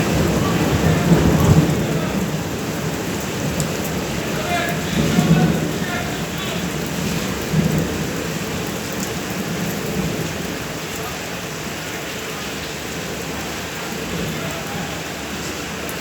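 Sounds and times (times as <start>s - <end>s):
thunder rumbles: 0.0s - 11.7s
steady rain falling: 0.0s - 16.0s.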